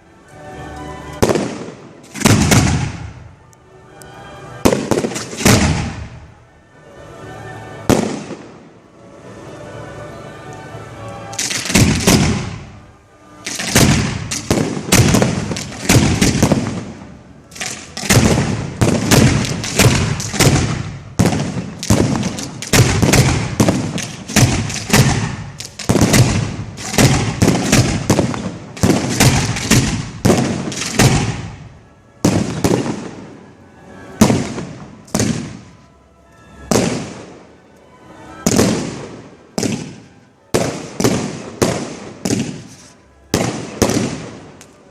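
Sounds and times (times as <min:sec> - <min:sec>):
fireworks bangs: 0:01.2 - 0:03.2, 0:04.6 - 0:06.3, 0:07.9 - 0:08.7, 0:11.4 - 0:12.8, 0:13.5 - 0:33.4, 0:34.2 - 0:35.8, 0:36.7 - 0:37.4, 0:38.4 - 0:44.6.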